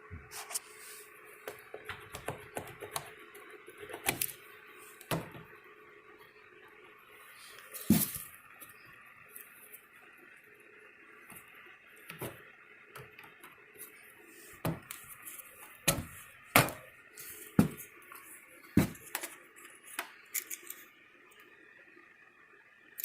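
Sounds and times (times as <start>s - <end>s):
metal and plastic parts clinking: 20.3s - 20.8s.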